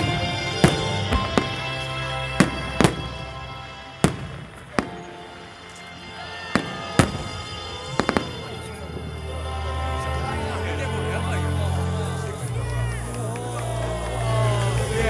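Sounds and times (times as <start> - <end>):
fireworks bursting: 0.0 - 9.1
background music with sustained notes: 0.0 - 15.0.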